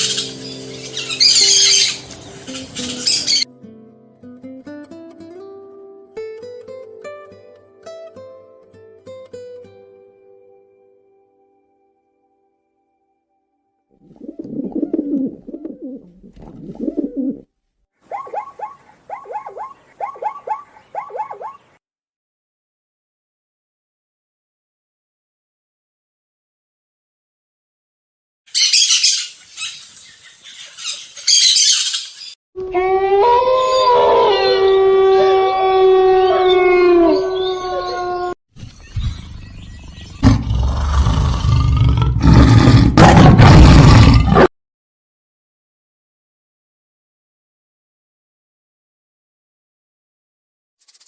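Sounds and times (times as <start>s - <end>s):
pigeon cooing: 14.0s - 17.5s, 18.1s - 21.6s
dogs howling: 32.7s - 38.4s.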